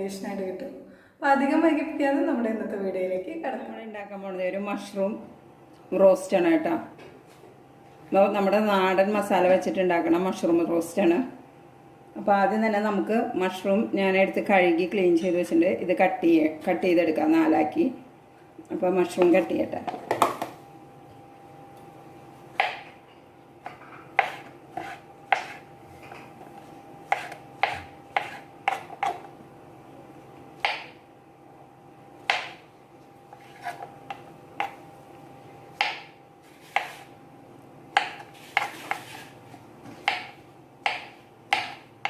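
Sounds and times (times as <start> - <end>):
faint steady hum: 0.0 - 42.0
knife cutting on cutting board: 23.7 - 25.7, 27.1 - 29.3, 33.3 - 34.8, 35.8 - 37.1, 38.0 - 40.3.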